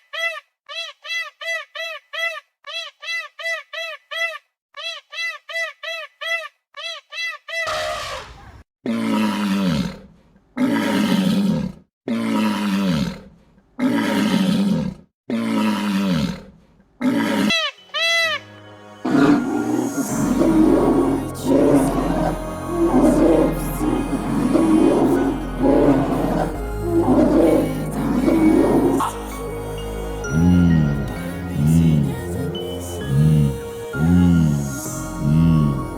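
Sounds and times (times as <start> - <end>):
loud animal roars: 7.7 - 17.6, 19.0 - 29.3
music: 17.7 - 35.9.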